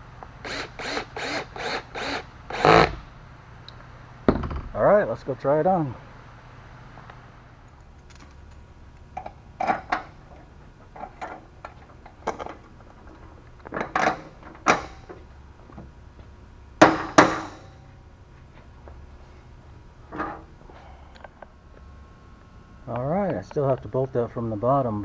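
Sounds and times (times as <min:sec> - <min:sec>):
knocks and clanks on metal frame: 0:04.3 - 0:04.9, 0:16.8 - 0:17.8.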